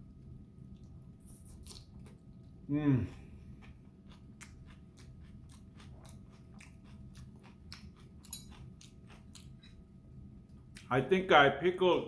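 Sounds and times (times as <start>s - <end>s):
crunchy food chewing: 1.4s - 9.9s.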